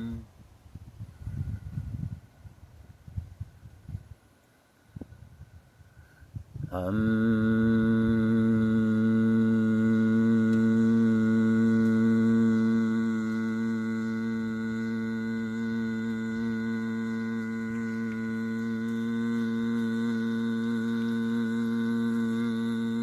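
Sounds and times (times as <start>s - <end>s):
man humming a low tone: 0.0s - 0.3s, 6.6s - 23.0s.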